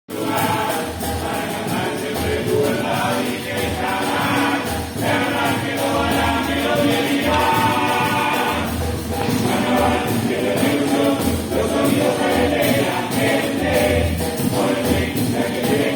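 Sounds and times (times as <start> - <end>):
group singing over instruments: 0.1 - 15.9
low beat: 3.6 - 15.5.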